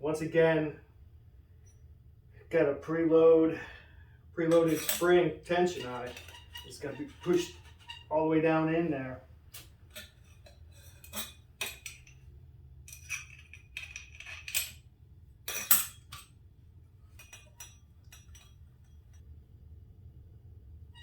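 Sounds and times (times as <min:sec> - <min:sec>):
metal parts clinking: 0:04.5 - 0:08.0, 0:09.6 - 0:12.2, 0:12.9 - 0:14.8, 0:15.5 - 0:16.3.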